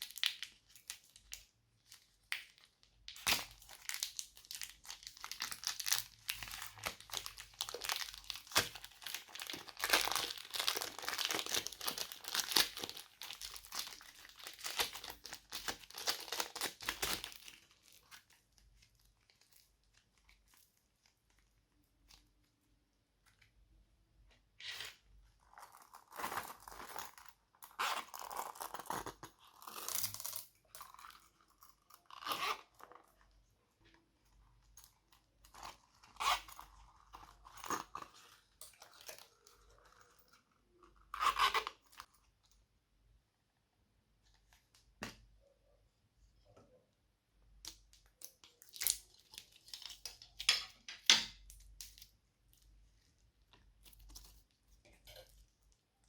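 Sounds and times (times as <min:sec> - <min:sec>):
slime crackling and tearing: 0:02.2 - 0:18.3, 0:48.1 - 0:50.3.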